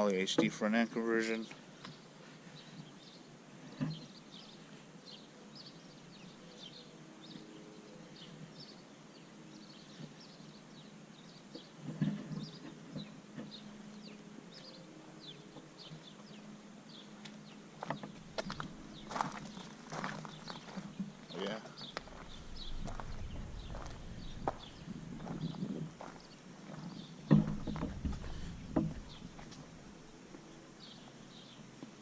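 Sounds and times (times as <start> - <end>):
faint outdoor background noise: 0.0 - 32.0
knocks and rustles: 11.6 - 13.6, 26.8 - 29.8
small bird chirping: 12.4 - 27.2.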